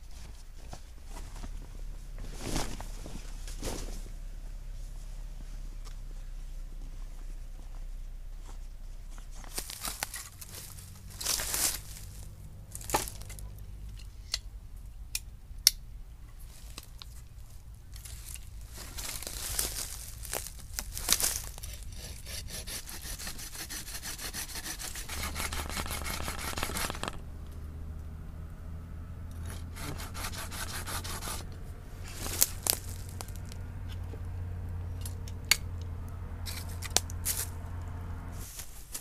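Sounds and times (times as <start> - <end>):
scratchy rubbing against wood: 21.2 - 27.2, 29.4 - 33.5
handling noise: 24.6 - 28.0
sharp clicks: 25.2 - 27.6.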